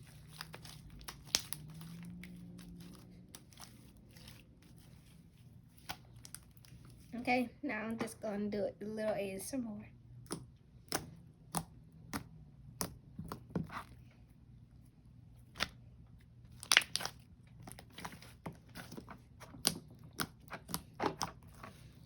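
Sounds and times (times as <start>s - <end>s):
slime sticky clicks and pops: 16.6s - 17.2s.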